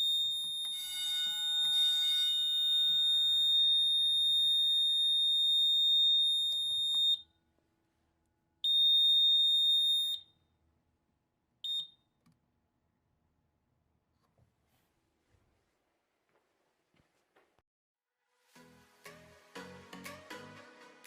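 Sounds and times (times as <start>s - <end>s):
fire alarm chirp: 0.0s - 7.3s, 8.6s - 10.5s, 11.6s - 12.1s
fire alarm electronic tone: 0.0s - 7.3s, 8.6s - 10.4s, 11.6s - 12.0s.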